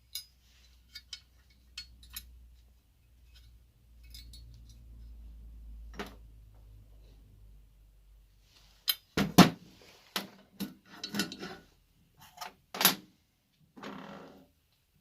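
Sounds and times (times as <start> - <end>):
metal parts clicking and knocking: 0.0 - 4.9.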